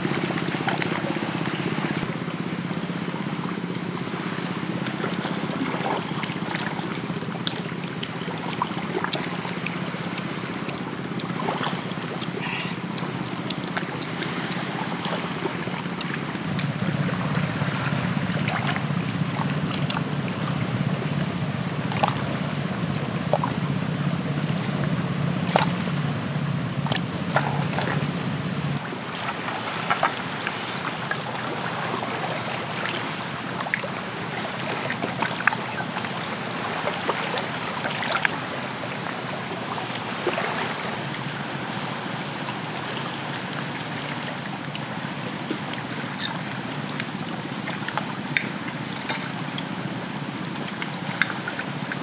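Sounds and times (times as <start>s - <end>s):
pot bubbling: 16.1s - 28.8s.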